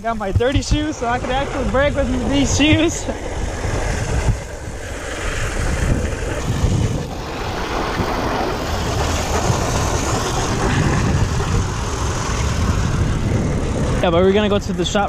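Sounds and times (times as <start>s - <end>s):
bike rolling noise: 0.0s - 15.0s
wind buffeting microphone: 0.0s - 15.0s.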